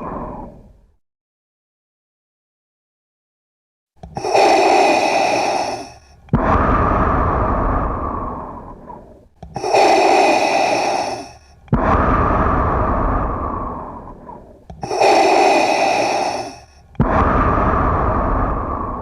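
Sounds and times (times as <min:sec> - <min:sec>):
respirator mask breathing: 0:04.0 - 0:19.0.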